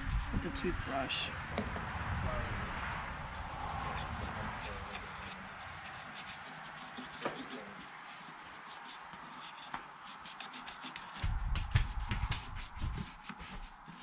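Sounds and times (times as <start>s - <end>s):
toothbrush scrubbing: 0.0s - 0.4s, 3.4s - 14.0s
low rumble: 0.2s - 4.2s.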